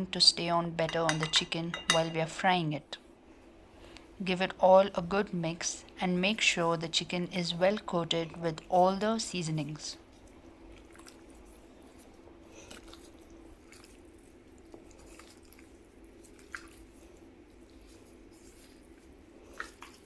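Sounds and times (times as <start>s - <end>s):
chicken squelching in marinade: 10.8s - 20.0s.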